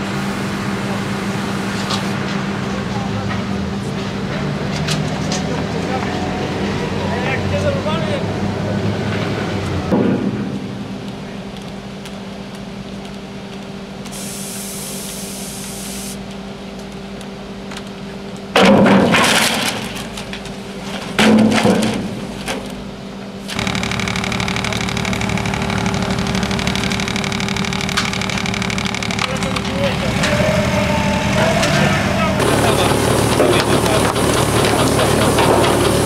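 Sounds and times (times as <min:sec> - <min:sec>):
wood chipper humming: 0:09.0 - 0:36.0
wood chipping bursts: 0:23.5 - 0:29.9.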